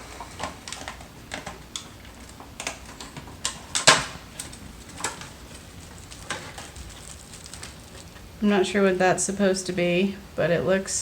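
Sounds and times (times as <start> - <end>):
packaging crackle: 0.0 - 8.5
packaging crinkling: 0.0 - 8.5.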